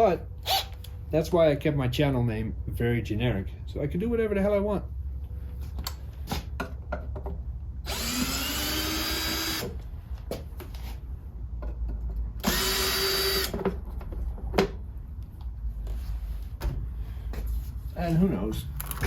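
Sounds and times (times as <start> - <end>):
power drill whirring: 7.8 - 9.8, 12.4 - 13.6.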